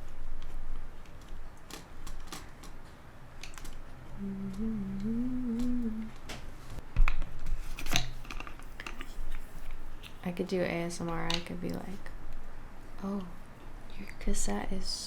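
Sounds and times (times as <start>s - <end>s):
person humming: 4.2s - 6.2s.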